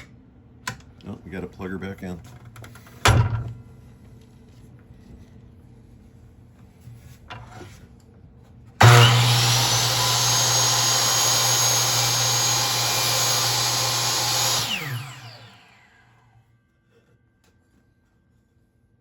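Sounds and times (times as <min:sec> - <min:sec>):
miter saw motor whining: 0:08.8 - 0:16.4.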